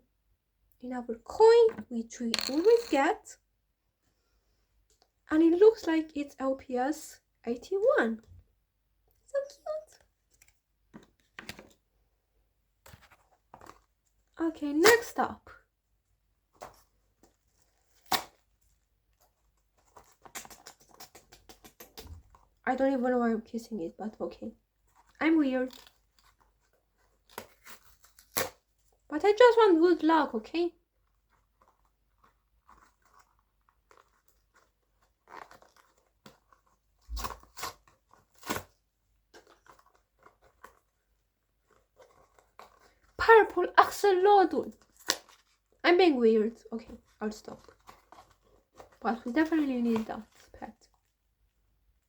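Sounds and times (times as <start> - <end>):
package crinkling: 2.4 - 3.0
plastic wrapper crinkling and tearing: 2.4 - 3.1, 25.7 - 28.6, 31.4 - 43.2, 47.5 - 49.4.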